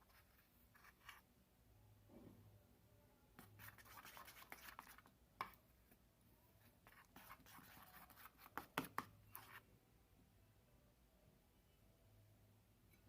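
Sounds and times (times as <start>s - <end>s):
slime being stirred: 0.0s - 1.3s, 3.4s - 6.0s, 6.7s - 9.7s.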